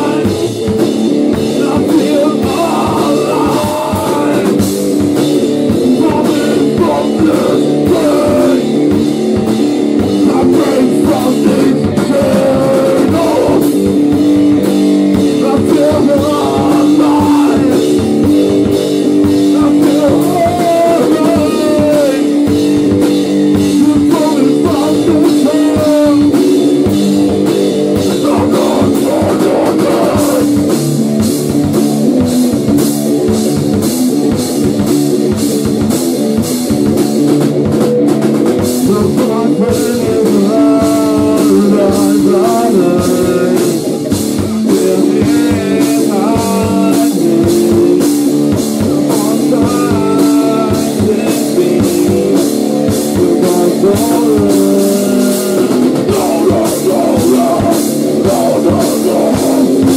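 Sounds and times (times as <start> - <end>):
drum kit hits: 0.0 - 59.9
electric guitar chords: 0.0 - 59.9.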